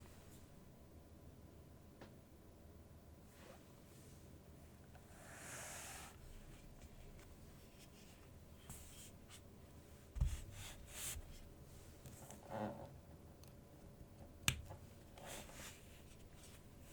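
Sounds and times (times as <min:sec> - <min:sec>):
soft brushing on keyboard: 0:05.0 - 0:12.0, 0:15.2 - 0:16.9.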